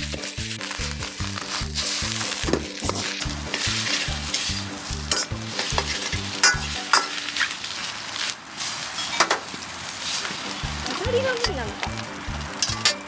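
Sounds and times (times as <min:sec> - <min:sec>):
rice sizzling in a wok: 0:00.0 - 0:13.0.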